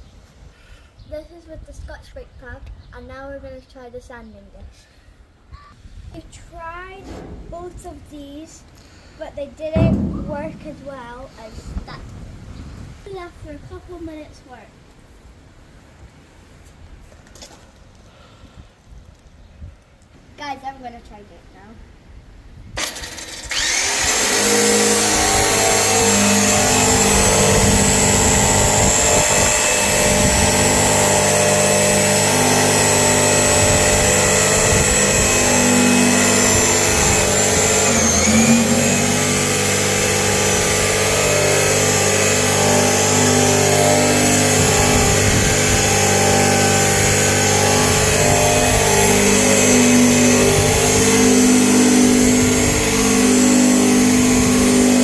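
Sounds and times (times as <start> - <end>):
drum sander motor whine: 22.8 - 55.0.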